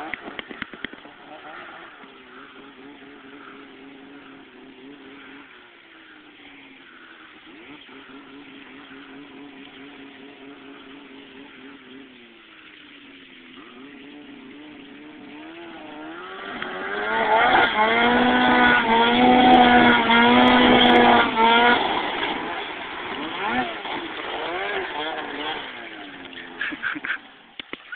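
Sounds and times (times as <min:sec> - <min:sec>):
snowmobile engine revving: 0:00.0 - 0:27.9.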